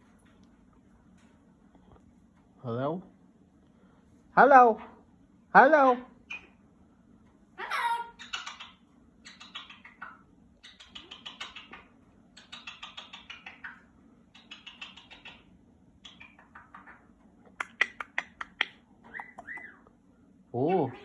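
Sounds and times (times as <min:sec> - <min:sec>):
pet bird clicking chatter: 0:08.2 - 0:19.8.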